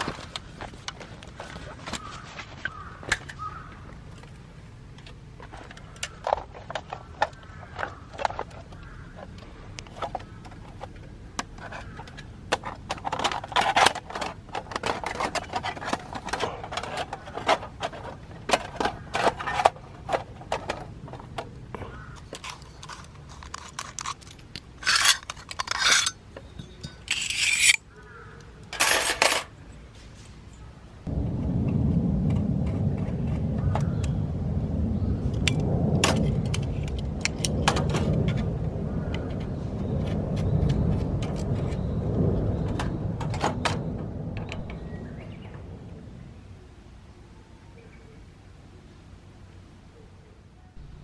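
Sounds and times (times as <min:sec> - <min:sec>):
camp gear clicking and clinking: 0:00.0 - 0:30.6.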